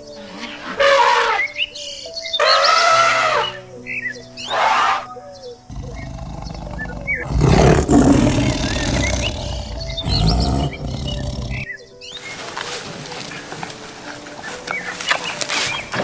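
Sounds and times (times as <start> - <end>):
background music: 0.0 - 16.0
lion roaring: 0.2 - 1.5, 5.7 - 11.7.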